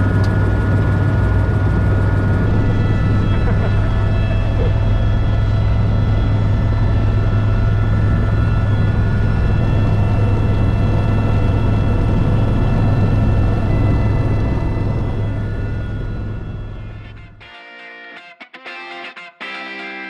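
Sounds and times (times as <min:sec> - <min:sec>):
helicopter rotors and engine drone: 0:00.0 - 0:17.8
high steady whines: 0:00.0 - 0:18.1.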